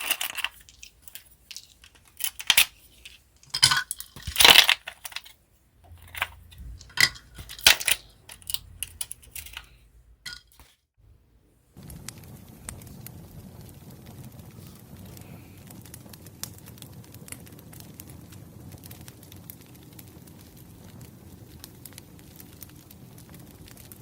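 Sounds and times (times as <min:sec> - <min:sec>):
cups and utensils clinking: 0:00.0 - 0:05.3, 0:05.9 - 0:09.7, 0:10.3 - 0:10.7
campfire crackling: 0:00.0 - 0:09.8, 0:11.7 - 0:24.0.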